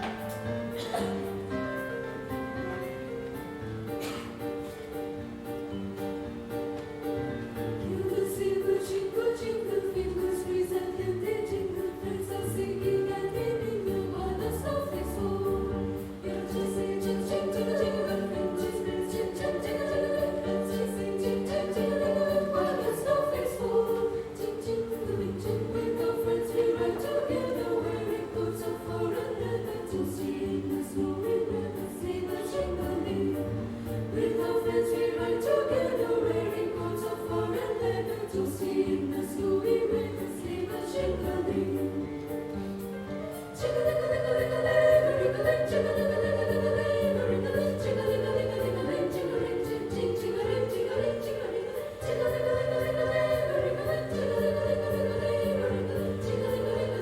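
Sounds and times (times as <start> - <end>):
women's choir singing carol: 0.0 - 3.4, 7.4 - 57.0.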